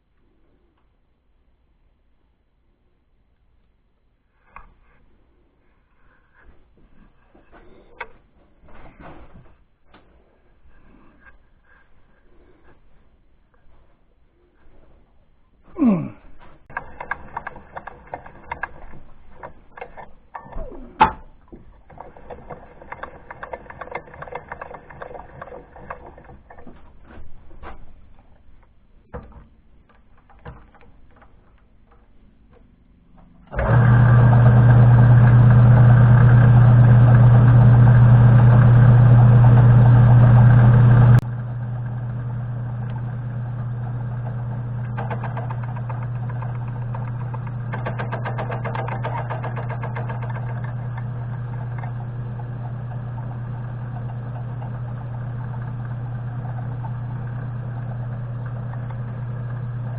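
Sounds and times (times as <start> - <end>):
machine tool motor humming: 33.4 - 59.9.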